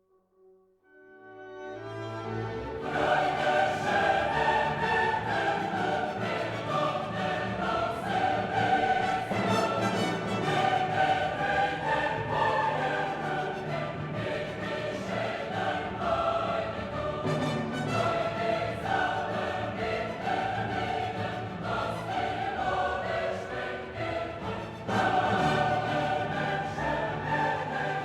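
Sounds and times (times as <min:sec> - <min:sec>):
choir singing held notes: 0:02.3 - 0:28.0.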